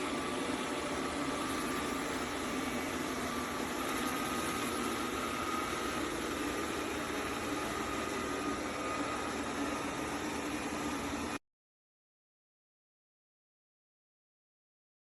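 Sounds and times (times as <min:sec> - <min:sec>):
robot vacuum motor hum: 0:00.0 - 0:11.4.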